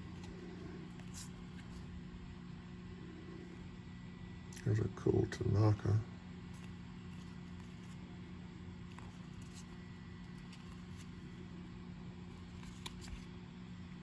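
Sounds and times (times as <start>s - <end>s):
low electrical hum: 0.0s - 14.0s
cards clicking and flicking: 12.2s - 13.4s.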